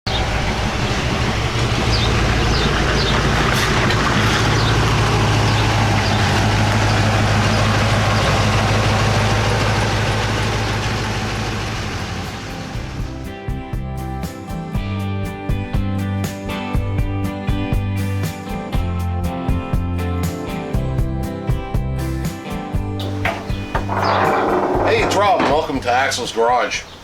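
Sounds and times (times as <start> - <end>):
truck engine running: 0.0 - 13.4, 23.0 - 27.0.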